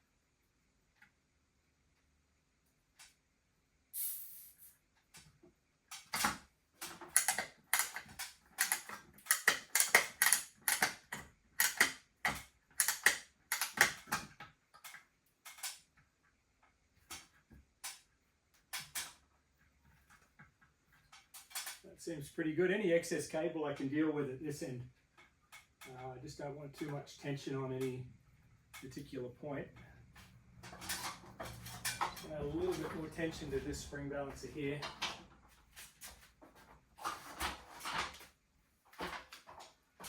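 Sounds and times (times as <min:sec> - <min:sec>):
clicks and rattles of cable hardware: 0:05.9 - 0:16.2, 0:17.0 - 0:19.2, 0:19.8 - 0:21.9, 0:29.8 - 0:33.8, 0:38.9 - 0:40.0.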